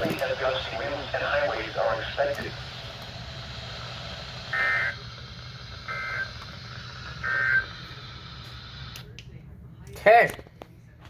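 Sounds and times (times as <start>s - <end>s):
low steady hum: 0.0s - 11.0s
buzzy two-tone data bursts: 4.5s - 5.1s, 5.8s - 9.0s.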